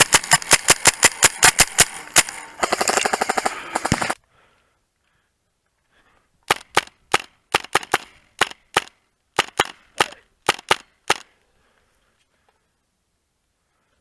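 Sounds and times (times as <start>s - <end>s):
airsoft gun shots: 0.0s - 4.2s.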